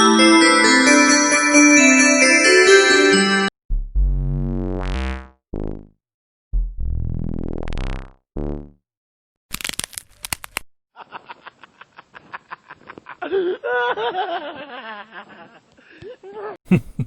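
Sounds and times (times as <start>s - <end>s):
busy music: 0.0s - 3.5s.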